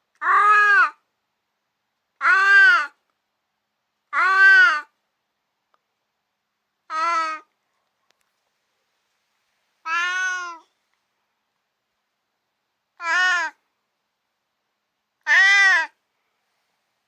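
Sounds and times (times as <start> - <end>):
cat meowing: 0.2 - 1.0, 2.2 - 2.9, 4.2 - 4.9, 6.9 - 7.5, 9.8 - 10.7, 13.0 - 13.6, 15.2 - 16.0.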